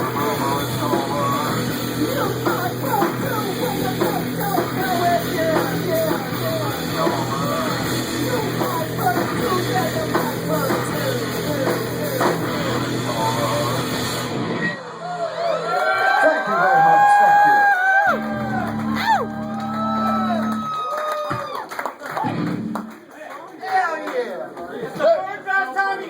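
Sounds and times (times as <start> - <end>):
person singing: 0.0 - 14.1
rock band playing: 0.0 - 15.0, 17.8 - 20.8, 22.1 - 23.1.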